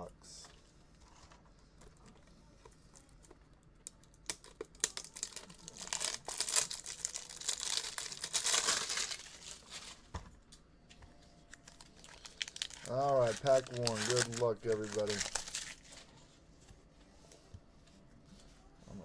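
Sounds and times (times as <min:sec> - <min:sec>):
card packaging crinkling and tearing: 0:03.9 - 0:10.1, 0:11.5 - 0:16.1.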